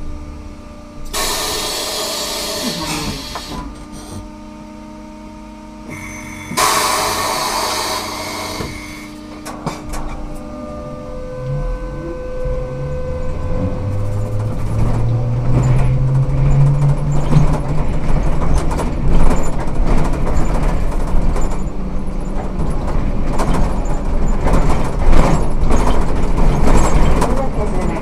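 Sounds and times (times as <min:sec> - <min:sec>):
trolleybus motor hum rising: 0:00.0 - 0:28.0
knocks and rattles: 0:14.0 - 0:28.0.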